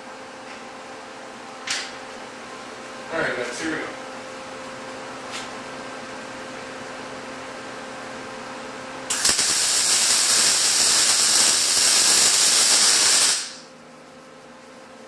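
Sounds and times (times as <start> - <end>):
arc welding crackling hiss: 9.1 - 13.7.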